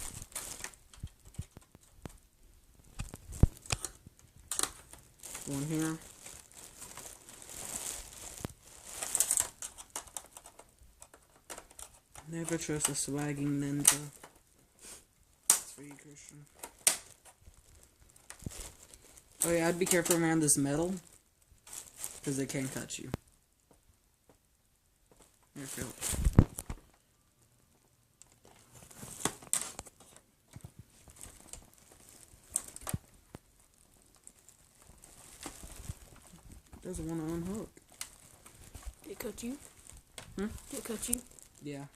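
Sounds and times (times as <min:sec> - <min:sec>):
plastic scraping and clicking: 0:00.0 - 0:02.2, 0:02.9 - 0:05.1, 0:08.4 - 0:14.4.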